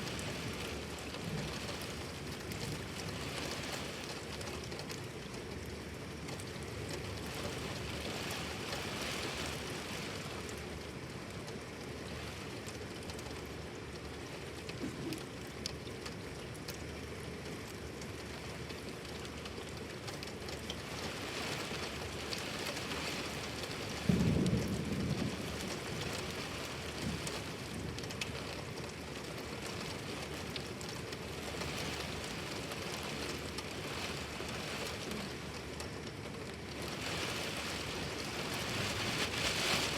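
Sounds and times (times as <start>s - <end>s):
low rumble of thunder: 0.0s - 5.1s, 22.0s - 35.8s
rain pouring: 0.0s - 39.9s.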